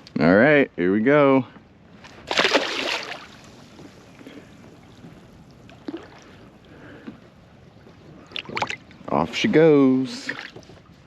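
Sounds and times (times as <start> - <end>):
water lapping around kayak: 1.5 - 11.0
water splash: 2.2 - 3.9, 5.7 - 6.4, 8.3 - 8.9.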